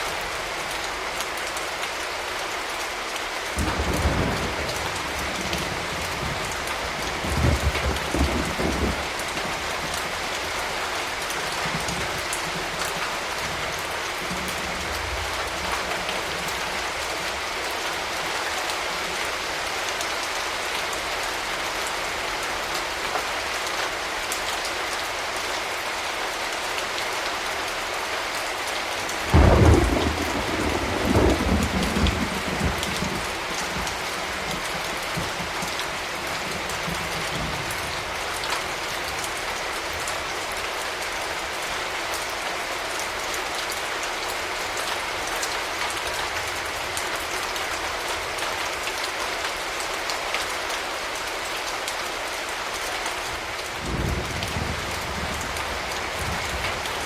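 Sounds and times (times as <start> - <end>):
steady rain falling: 0.0 - 57.0
thunder crack and rumble: 3.6 - 10.0, 29.3 - 35.7, 53.8 - 57.0.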